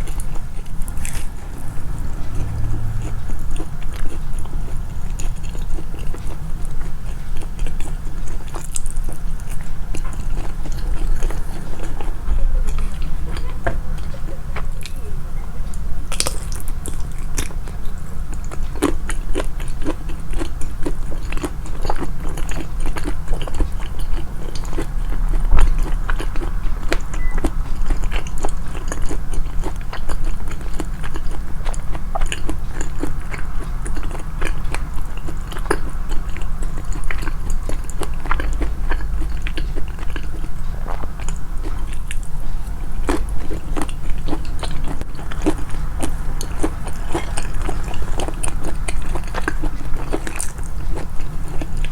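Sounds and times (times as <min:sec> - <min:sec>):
chewing and crunching food: 0:00.0 - 0:51.9.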